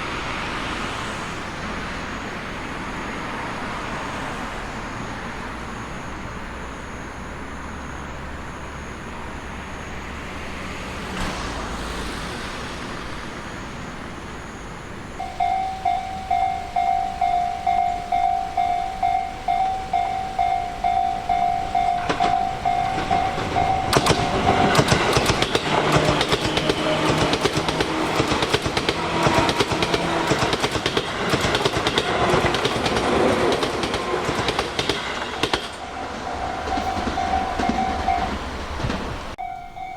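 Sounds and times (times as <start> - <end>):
train motor hum: 0.0 - 39.9
train wheels clattering over rails: 0.0 - 39.9
level crossing bell dinging: 15.2 - 24.8, 39.4 - 39.9.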